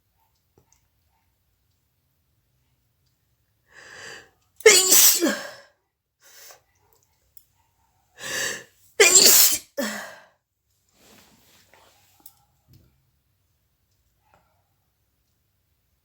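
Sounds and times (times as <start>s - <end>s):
woman sneezing: 4.7s - 5.6s, 8.2s - 10.2s.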